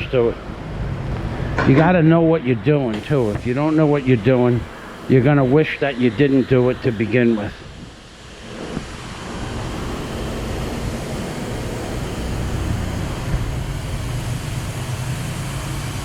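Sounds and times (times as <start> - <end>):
machine humming and hissing: 0.0 - 16.0.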